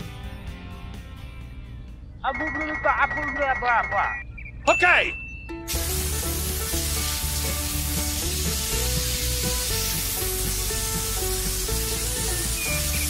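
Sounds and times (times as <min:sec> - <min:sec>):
background music with low bass: 0:00.0 - 0:04.2, 0:05.1 - 0:13.0
steady hiss: 0:05.7 - 0:13.0.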